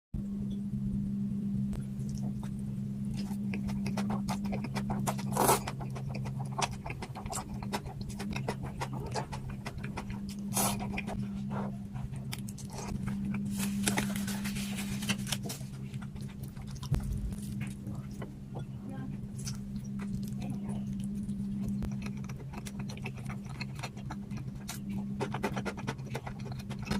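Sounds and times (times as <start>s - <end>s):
low hum: 0.2s - 26.9s
chewing with wet clicks: 2.0s - 11.2s, 12.1s - 13.5s, 15.9s - 18.7s, 19.3s - 26.9s.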